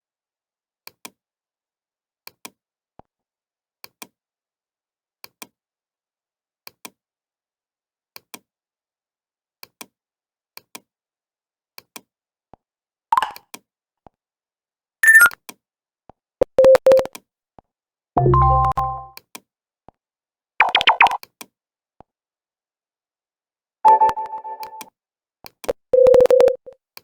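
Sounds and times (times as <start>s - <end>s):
sharp double clicks: 20.6s - 21.2s.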